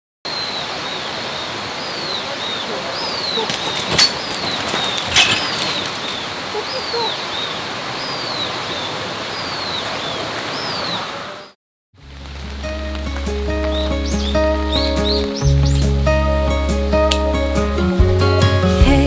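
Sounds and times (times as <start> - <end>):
bird calling: 0.3 - 11.6, 13.5 - 16.0
steady outdoor hiss: 0.3 - 19.0
music: 12.0 - 19.0.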